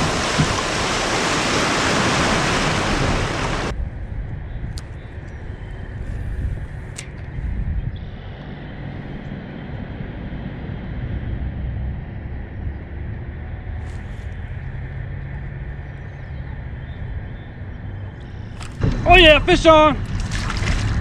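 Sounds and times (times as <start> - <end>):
river water rushing: 0.0 - 3.7
wind buffeting microphone: 0.0 - 21.0.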